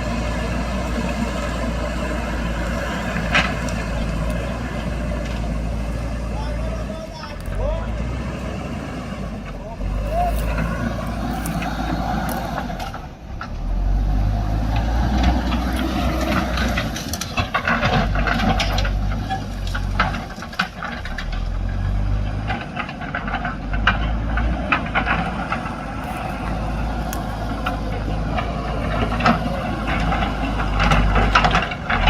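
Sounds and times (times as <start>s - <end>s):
diesel engine under load: 0.0s - 32.0s
knocks and clanks: 14.8s - 32.0s.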